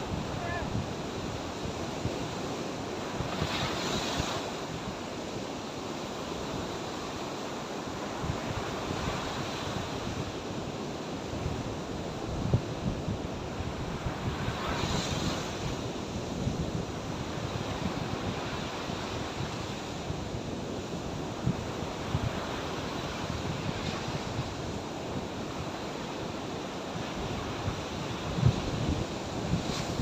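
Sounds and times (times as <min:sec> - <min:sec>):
sea surf washing on shore: 0:00.0 - 0:30.0
wind buffeting microphone: 0:27.2 - 0:30.0.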